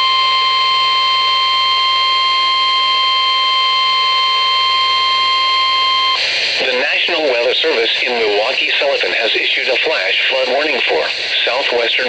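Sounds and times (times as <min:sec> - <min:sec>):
steady high alarm beep: 0:00.0 - 0:06.2
radio hiss: 0:04.9 - 0:12.0.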